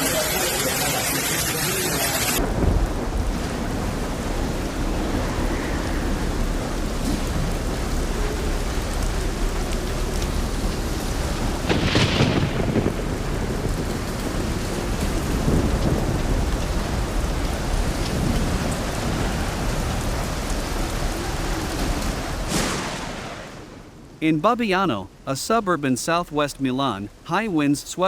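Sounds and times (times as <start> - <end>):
heavy rain: 0.0 - 28.0
thunder rumble: 2.4 - 24.1.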